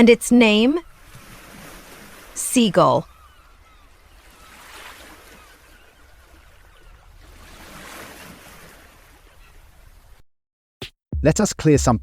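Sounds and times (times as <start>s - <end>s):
sea waves washing on shore: 0.8s - 3.1s, 4.2s - 9.4s.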